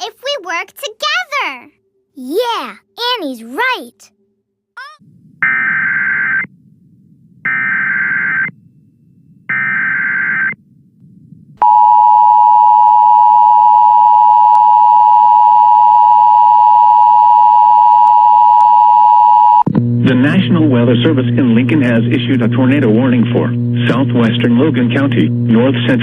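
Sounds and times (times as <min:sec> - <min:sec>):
screeching data tones: 0:05.4 - 0:06.5, 0:07.5 - 0:08.6, 0:09.5 - 0:10.6.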